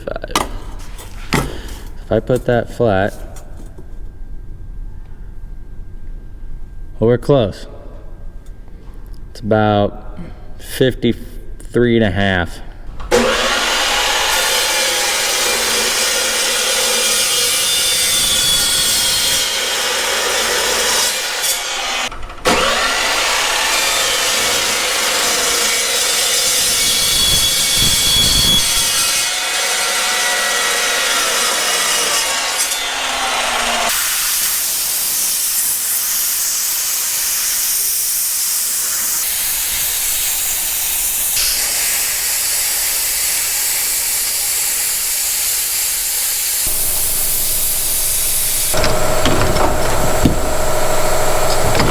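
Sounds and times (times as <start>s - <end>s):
power saw grinding steel: 13.1s - 37.7s, 38.3s - 51.9s
steady hiss: 42.0s - 51.9s.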